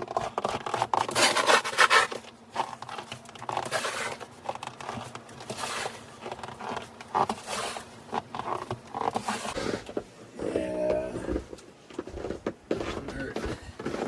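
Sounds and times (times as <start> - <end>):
shovel scraping snow: 1.0 - 2.2, 3.6 - 4.2, 5.4 - 9.9.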